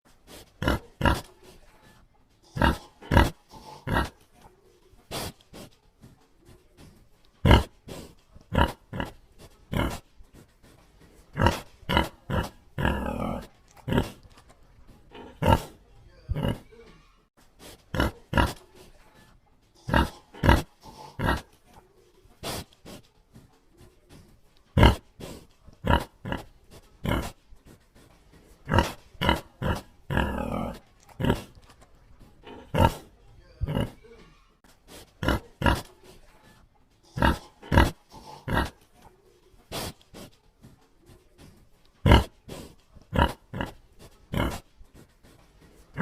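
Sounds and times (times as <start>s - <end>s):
pig grunting: 0.3s - 1.5s, 2.5s - 4.4s, 7.4s - 14.4s, 15.0s - 16.8s, 17.9s - 18.8s, 19.8s - 21.7s, 24.7s - 27.4s, 28.4s - 34.1s, 35.0s - 36.1s, 37.1s - 38.9s, 42.0s - 44.7s.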